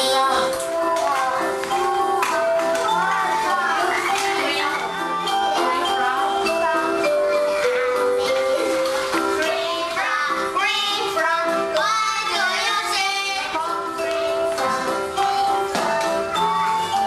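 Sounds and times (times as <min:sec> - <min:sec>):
child singing: 0:00.0 - 0:01.6, 0:05.5 - 0:16.2
bright instrumental backing: 0:00.0 - 0:17.0.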